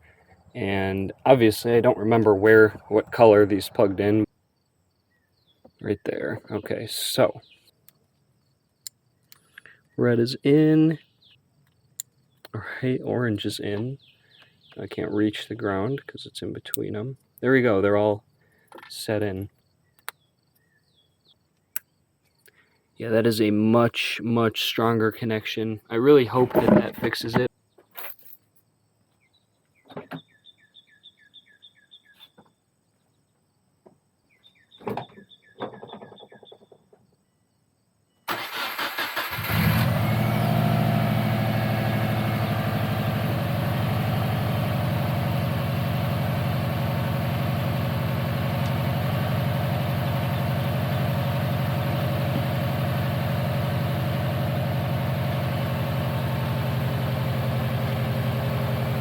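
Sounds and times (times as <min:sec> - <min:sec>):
car engine cranking and idling: 0:38.3 - 0:59.0.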